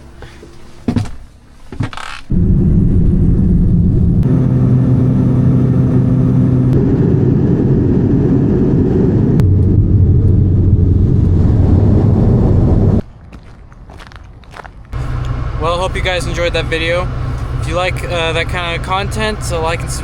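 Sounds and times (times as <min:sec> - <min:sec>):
engine droning: 0:02.3 - 0:13.1, 0:14.6 - 0:20.0.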